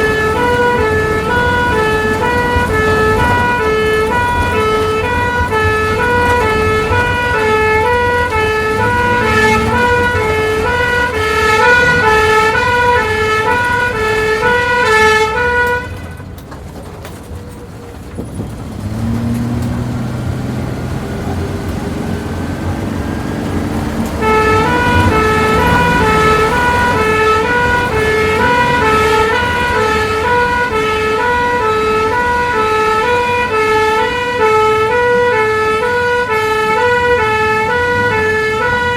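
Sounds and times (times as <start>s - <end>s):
two-tone ambulance siren: 0.0s - 16.4s, 18.6s - 38.9s
low vehicle rumble: 0.0s - 38.9s.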